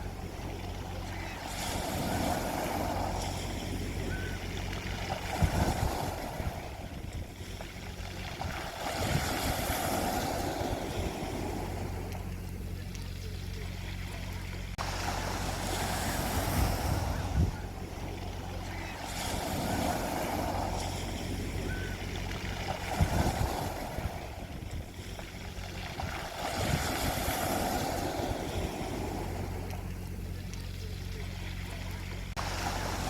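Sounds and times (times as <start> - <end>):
sea waves breaking on beach: 0.0 - 33.0
steady low hum: 0.0 - 33.0.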